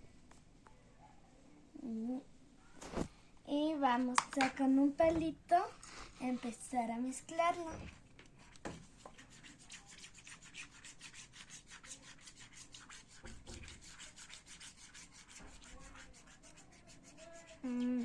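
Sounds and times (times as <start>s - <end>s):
stick stirring slime: 8.4s - 18.0s.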